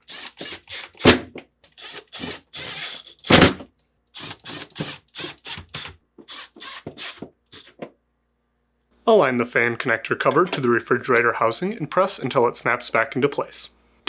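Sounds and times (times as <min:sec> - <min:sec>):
screws driven with hand tool: 0:00.0 - 0:03.6, 0:04.2 - 0:07.8.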